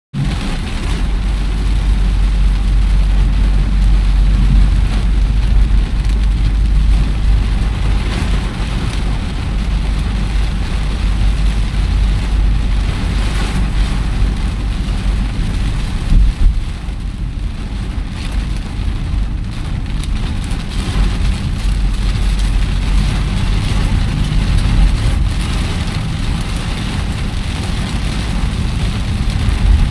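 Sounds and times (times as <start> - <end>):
rain drumming on car roof: 0.1 - 29.9
steady low rumble: 0.2 - 29.9
loud thump: 16.1 - 16.6.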